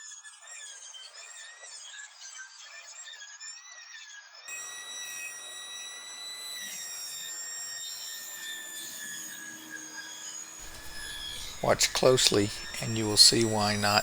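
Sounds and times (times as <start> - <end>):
table saw blade whining: 4.2 - 14.0.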